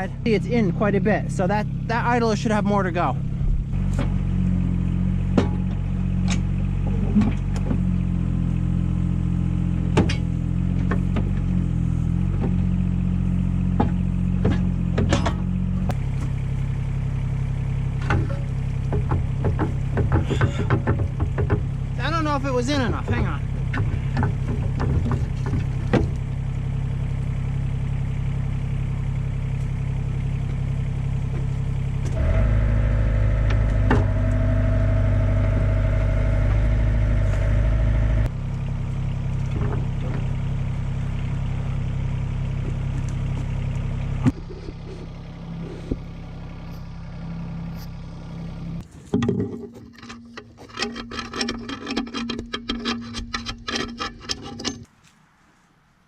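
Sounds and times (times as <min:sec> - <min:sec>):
diesel engine revving: 0:00.0 - 0:49.0
clicks and rattles: 0:48.8 - 0:54.9.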